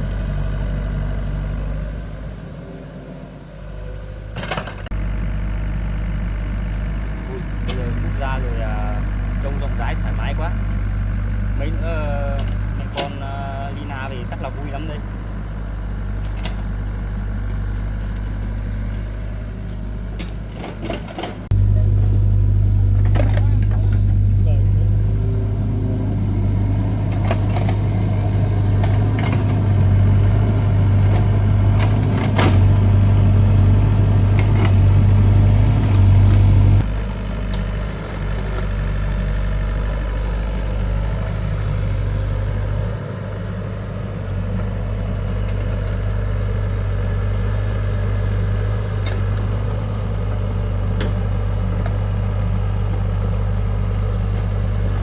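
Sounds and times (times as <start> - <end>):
excavator diesel engine: 0.0 - 55.0.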